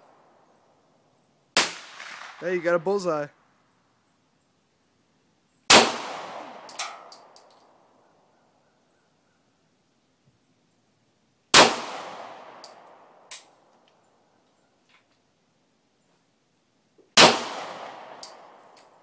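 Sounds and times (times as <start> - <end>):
pistol shots echoing: 1.6 - 2.8, 5.7 - 7.4, 11.5 - 13.5, 17.2 - 19.0
light metallic clink: 6.7 - 8.0, 12.6 - 13.6, 18.2 - 19.0.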